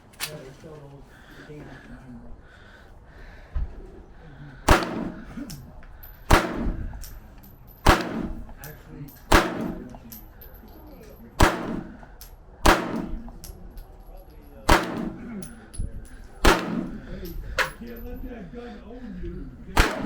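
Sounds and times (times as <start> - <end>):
gunshots: 4.7 - 5.4, 6.3 - 6.9, 7.8 - 8.5, 9.3 - 10.0, 11.4 - 13.4, 14.7 - 15.4, 16.4 - 17.1, 19.8 - 20.0.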